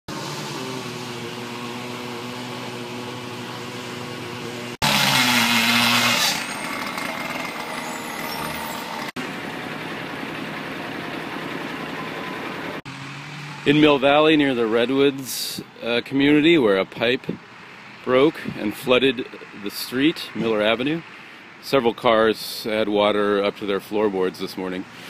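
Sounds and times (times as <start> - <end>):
engine running steadily: 0.1 - 7.8, 8.9 - 16.1.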